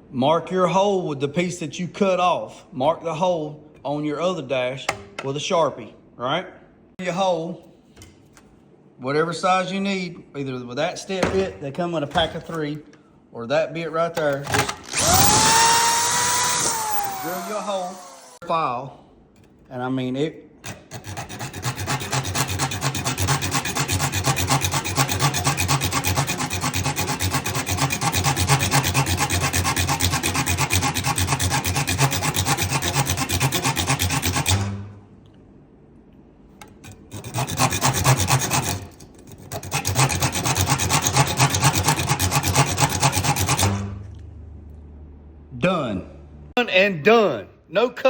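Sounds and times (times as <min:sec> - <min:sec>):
hand file rasping: 0:20.6 - 0:34.8, 0:36.6 - 0:43.8.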